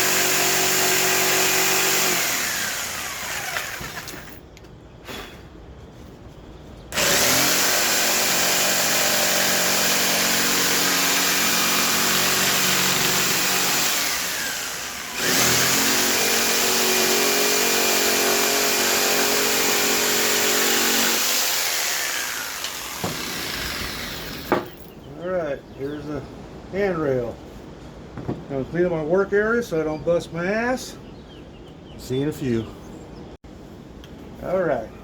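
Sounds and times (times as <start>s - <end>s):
woodworking power tool running: 0.0s - 4.4s, 7.0s - 24.8s.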